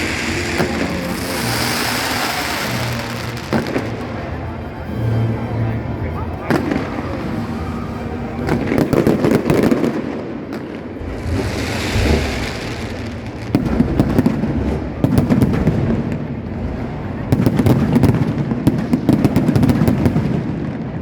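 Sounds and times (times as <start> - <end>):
hissing firework burst: 0.0 - 4.0, 10.8 - 16.0
fireworks bangs and crackling: 0.0 - 4.6, 6.4 - 21.0.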